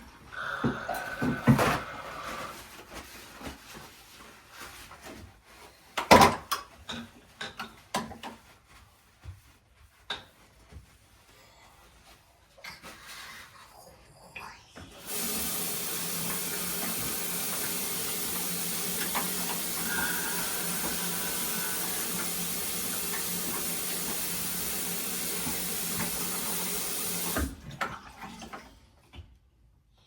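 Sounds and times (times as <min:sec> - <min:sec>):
water running from tap: 0:00.4 - 0:02.0, 0:15.0 - 0:28.6.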